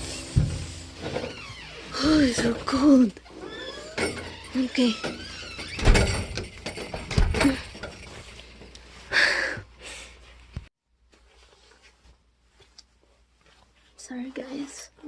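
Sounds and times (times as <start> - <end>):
sharp knocks and handling noise: 4.0 - 8.9.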